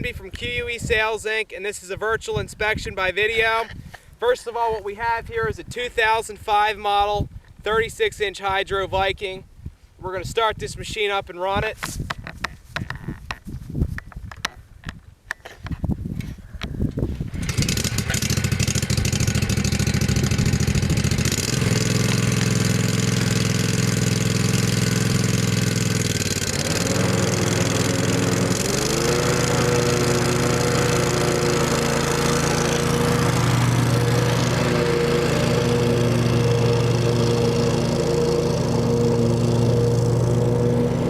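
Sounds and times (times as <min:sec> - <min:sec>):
lawn mower engine starting: 0:17.1 - 0:41.0
lawn mower engine running: 0:17.2 - 0:41.0.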